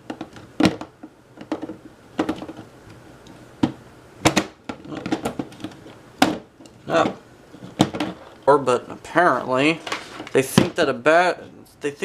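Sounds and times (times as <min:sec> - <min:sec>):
camcorder being handled knocks: 0:03.6 - 0:05.5.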